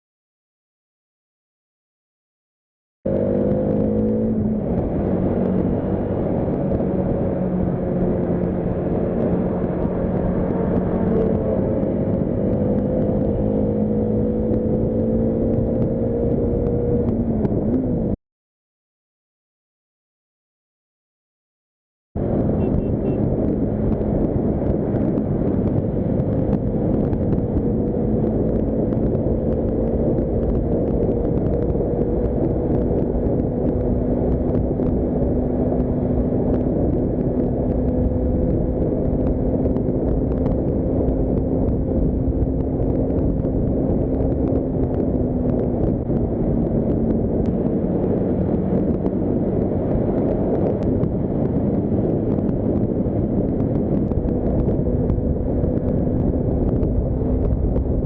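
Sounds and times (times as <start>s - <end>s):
motorcycle engine at high revs: 3.1s - 17.6s, 22.4s - 58.0s
wind blast on microphone: 22.2s - 58.0s.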